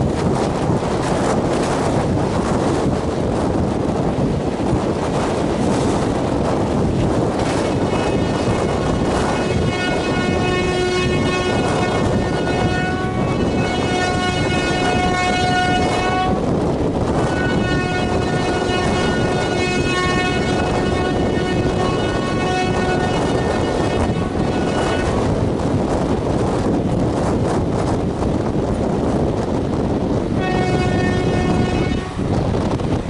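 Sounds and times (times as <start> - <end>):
train running noise: 0.0 - 33.0
locomotive horn blasts: 7.5 - 16.5, 17.1 - 25.5, 30.4 - 32.3.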